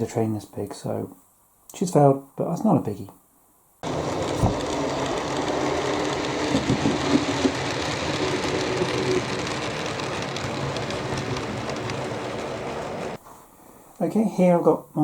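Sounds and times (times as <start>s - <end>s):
electric motor hum: 3.8s - 13.2s
wheels rattling on rail: 3.8s - 13.2s.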